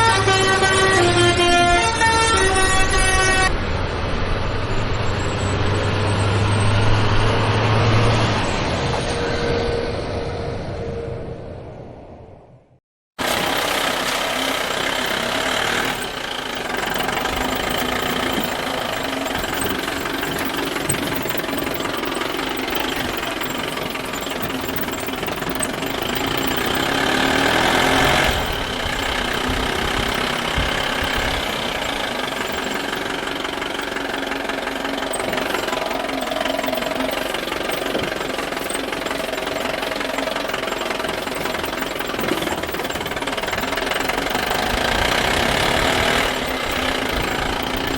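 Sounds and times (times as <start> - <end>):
toy vehicle running: 0.0 - 3.5, 13.2 - 47.9.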